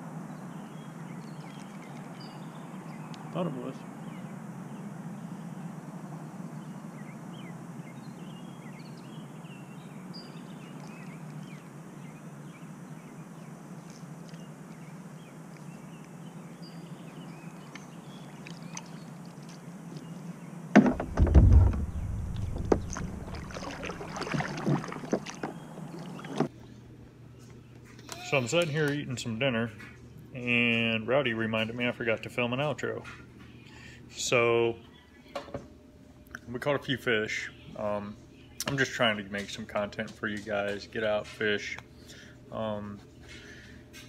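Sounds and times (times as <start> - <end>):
steady low hum: 0.0 - 44.0
loud thumps: 20.7 - 25.3.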